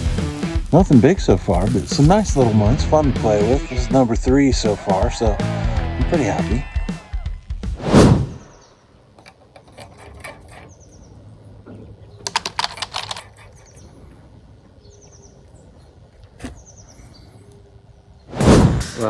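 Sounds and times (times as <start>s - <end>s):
sharp clicks and rattles: 0.0s - 2.5s, 12.2s - 13.8s.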